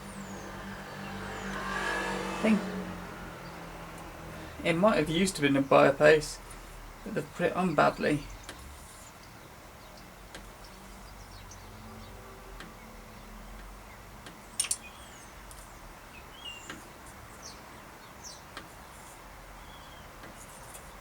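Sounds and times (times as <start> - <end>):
tools clicking on bicycle parts: 13.6 - 15.6.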